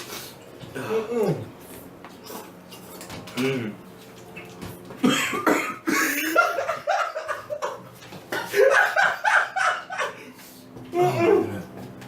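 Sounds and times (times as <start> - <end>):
man coughing hard: 5.0 - 6.5.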